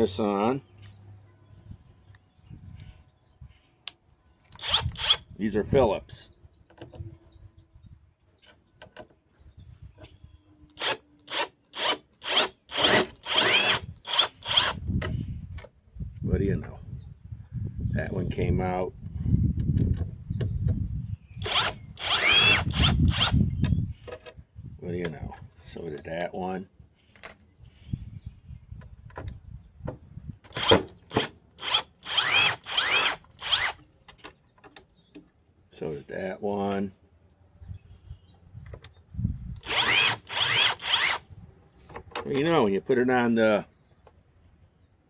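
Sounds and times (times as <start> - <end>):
impact driver bursts with whine: 4.5 - 5.2, 10.8 - 14.8, 21.4 - 23.5, 30.5 - 33.8, 39.6 - 41.2.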